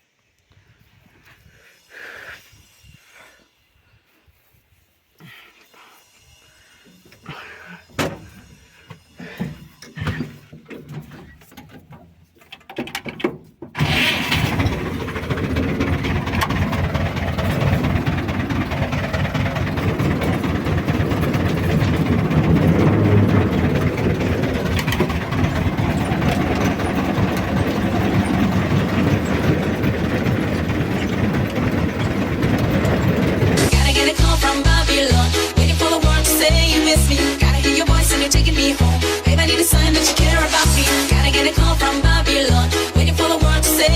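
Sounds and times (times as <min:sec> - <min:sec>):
engine running loudly: 0:13.8 - 0:35.5
knocks and clicks: 0:15.2 - 0:34.3.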